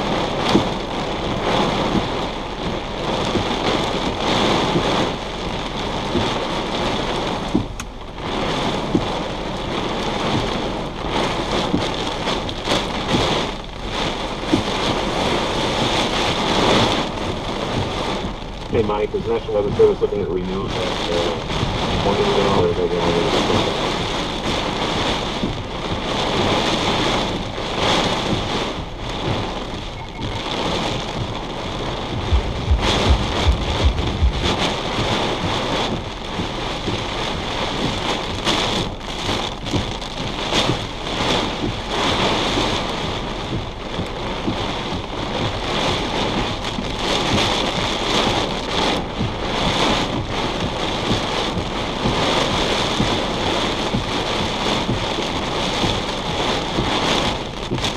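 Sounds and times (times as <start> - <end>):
heavy rain on a vehicle: 0.0 - 57.9
deep thunder rumble: 17.6 - 50.1
gusty wind: 20.7 - 57.9.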